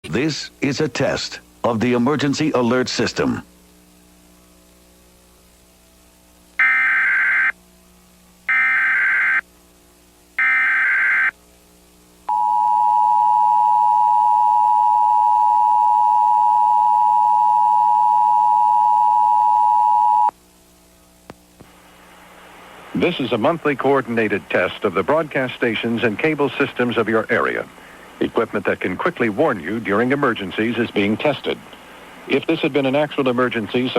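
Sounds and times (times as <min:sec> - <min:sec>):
two-tone attention signal: 0:12.3 - 0:20.3.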